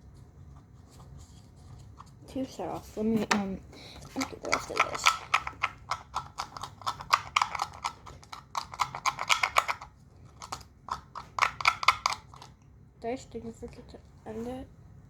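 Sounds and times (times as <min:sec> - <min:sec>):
rapid irregular clicking and tapping: 0:03.2 - 0:12.6.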